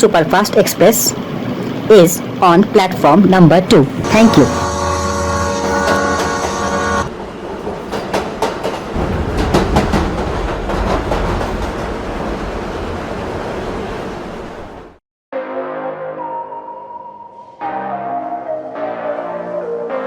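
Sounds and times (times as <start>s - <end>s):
train horn: 4.0s - 7.1s
train wheels clattering: 4.1s - 14.2s
music: 15.3s - 20.0s.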